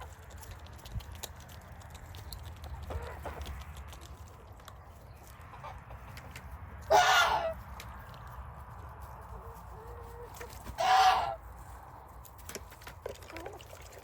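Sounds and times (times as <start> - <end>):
chickens clucking: 2.3 - 8.2, 9.3 - 11.4
loud chicken call: 6.9 - 7.6, 10.7 - 11.4.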